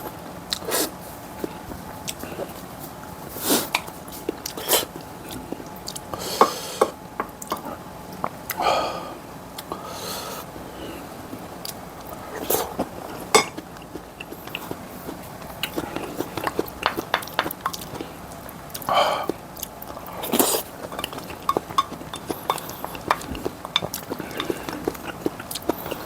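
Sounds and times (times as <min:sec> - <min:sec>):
chewing and biting: 0:00.5 - 0:06.1, 0:11.6 - 0:26.0
utensils clinking on dishes: 0:13.2 - 0:14.7, 0:20.2 - 0:26.0.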